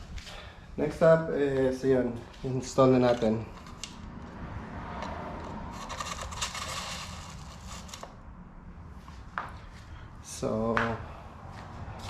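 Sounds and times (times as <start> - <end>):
seat post scraping in bike frame: 5.0 - 8.2.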